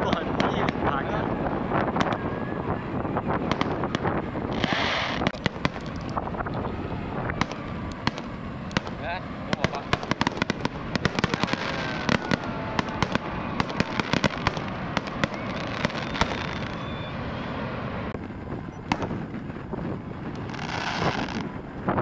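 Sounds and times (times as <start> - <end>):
firework bangs: 0.0 - 22.0
fireworks popping and crackling: 0.0 - 22.0.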